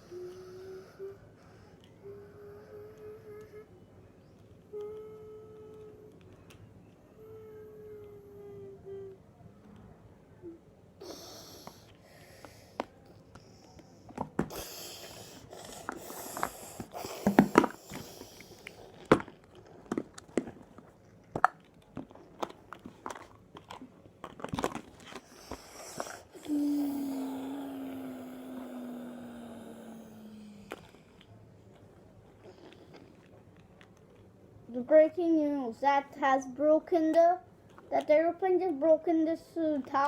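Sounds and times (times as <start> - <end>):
low steady hum: 0.0 - 40.0
breath noise: 11.0 - 19.2, 25.1 - 31.3.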